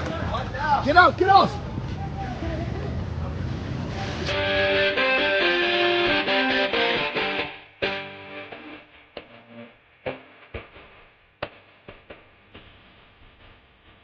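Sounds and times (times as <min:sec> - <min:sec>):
distorted electric guitar music: 0:04.3 - 0:11.9.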